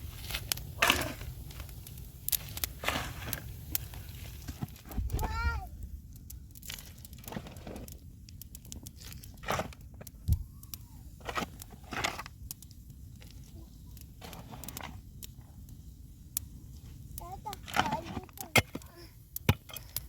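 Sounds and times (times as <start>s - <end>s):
steady low rumble: 0.0s - 7.3s, 7.9s - 14.2s
crunching and rustling handling: 0.0s - 12.4s.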